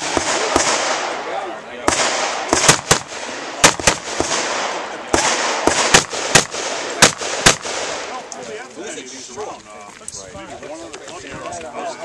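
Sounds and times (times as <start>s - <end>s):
rifle shots: 0.0s - 8.2s.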